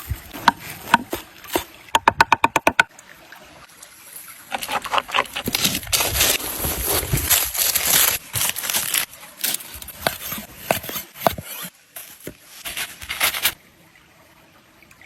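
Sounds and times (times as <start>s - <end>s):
scraping and rubbing handling sounds: 4.5s - 13.6s.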